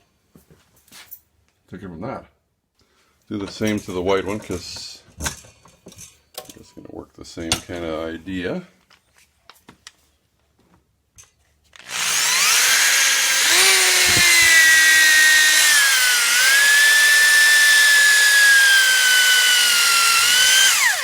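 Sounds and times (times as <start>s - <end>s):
electric drill whining: 11.8s - 21.0s.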